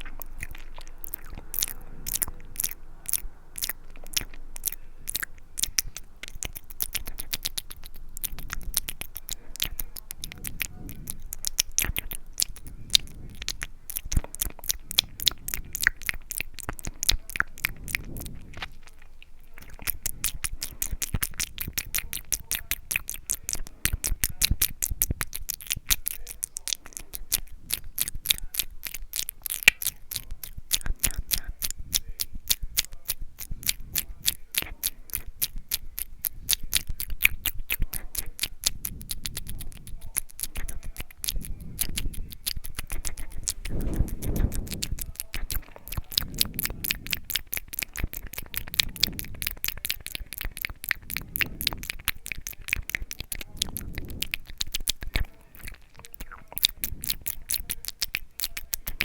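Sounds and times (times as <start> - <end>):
wet tongue and lip clicks: 0.0 - 59.0.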